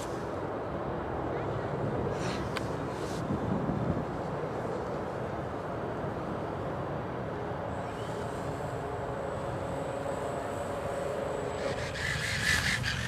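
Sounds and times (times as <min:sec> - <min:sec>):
wind buffeting microphone: 0:00.0 - 0:07.4
high electric motor whine: 0:04.4 - 0:13.0.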